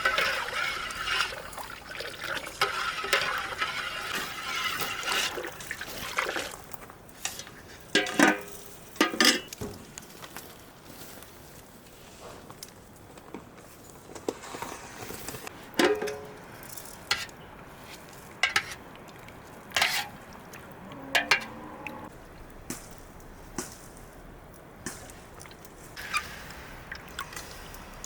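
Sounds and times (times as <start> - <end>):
kitchenware clinking and knocking: 8.0 - 9.6, 15.8 - 16.4.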